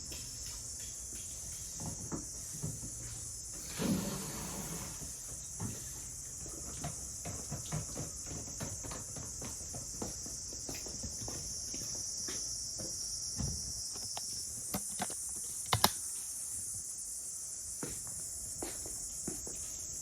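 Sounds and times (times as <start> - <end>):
insects chirring: 0.0 - 20.0.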